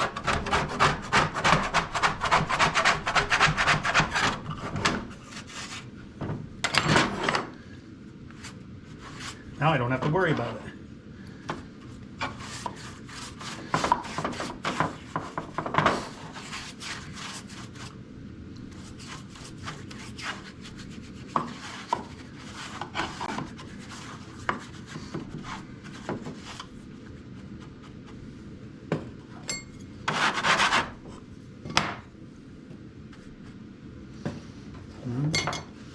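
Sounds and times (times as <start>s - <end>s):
hand scraping on wood: 30.1s - 31.0s.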